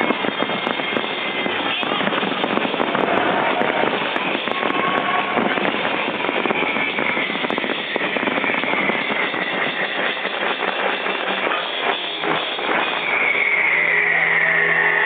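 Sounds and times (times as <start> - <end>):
fireworks crackling and popping: 0.0 - 14.0
loud steady roar: 0.0 - 15.0
high tone falling in pitch: 12.2 - 15.0.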